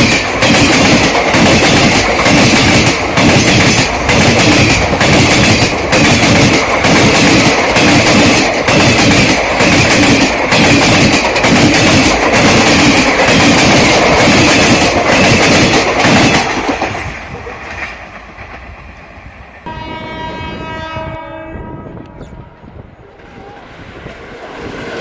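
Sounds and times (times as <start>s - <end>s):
train wheels clickety-clack: 0.0s - 19.1s.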